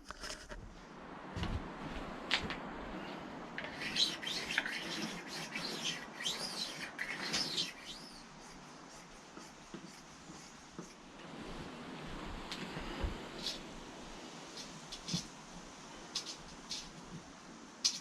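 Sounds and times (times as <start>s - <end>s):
small bird chirping: 3.7s - 8.6s.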